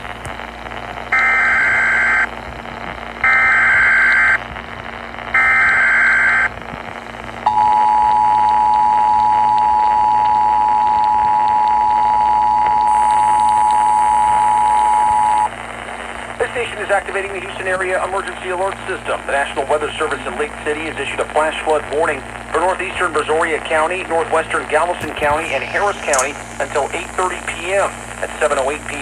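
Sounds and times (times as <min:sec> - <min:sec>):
radio hiss and hum: 0:00.0 - 0:29.0
two-tone attention signal: 0:07.5 - 0:15.5
digital header data bursts: 0:24.8 - 0:28.6.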